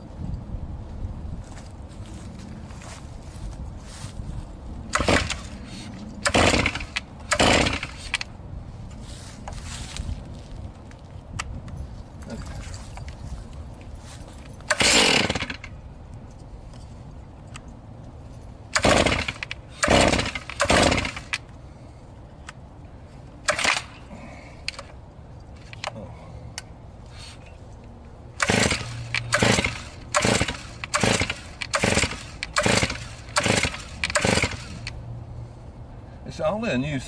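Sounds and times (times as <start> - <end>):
chainsaw starter cord pulls: 4.9 - 8.3, 14.6 - 15.7, 18.8 - 21.4, 28.4 - 35.0.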